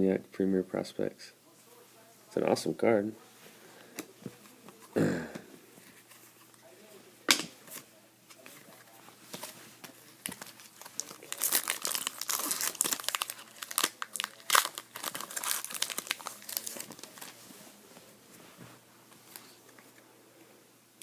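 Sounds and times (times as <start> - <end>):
foil wrapper crinkling: 10.2 - 17.4.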